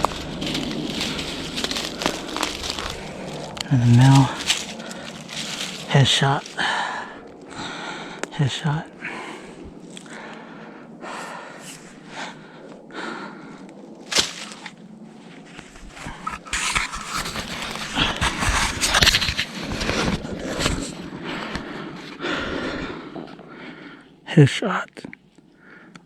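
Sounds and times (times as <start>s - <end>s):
sharp crack: 0.0s - 7.3s, 14.1s - 14.7s
footsteps crunching through dry leaves: 0.0s - 8.2s, 14.0s - 21.6s.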